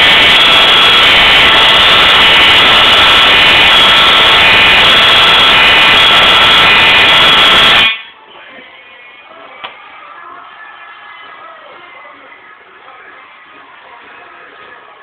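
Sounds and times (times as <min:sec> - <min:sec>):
fire alarm horn: 0:00.0 - 0:08.1.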